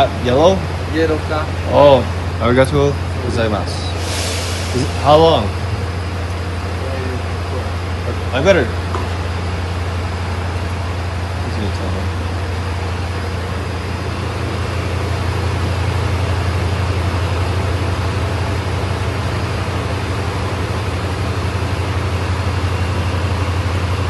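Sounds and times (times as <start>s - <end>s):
low engine rumble: 0.0s - 24.0s
even hiss: 3.5s - 7.7s.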